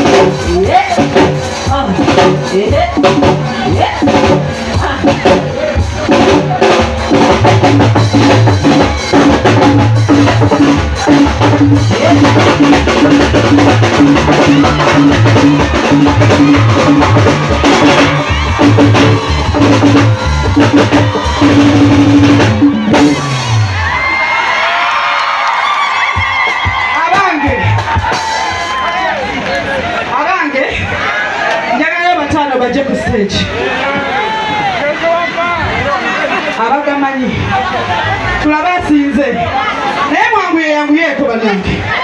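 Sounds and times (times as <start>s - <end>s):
drum kit beat: 0.0s - 29.4s
bass line: 0.0s - 30.0s.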